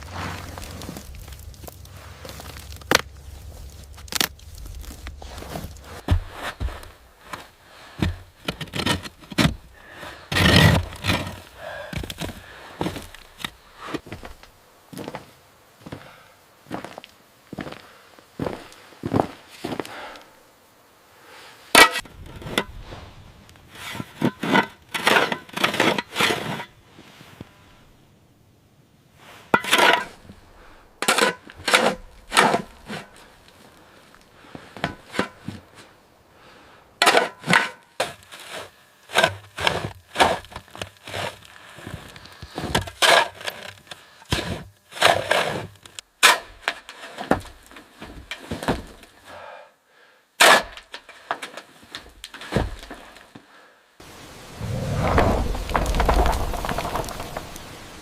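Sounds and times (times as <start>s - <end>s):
wood cracking and snapping: 0.0s - 6.9s, 54.6s - 58.0s.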